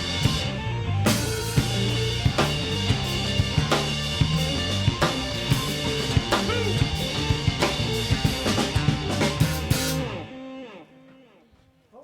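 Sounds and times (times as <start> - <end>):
live rock band playing: 0.0 - 10.4.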